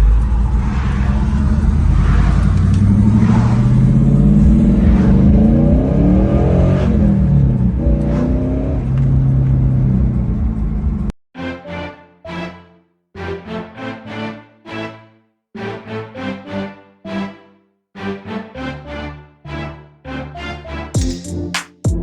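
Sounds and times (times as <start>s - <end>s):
car engine accelerating: 0.0s - 11.1s.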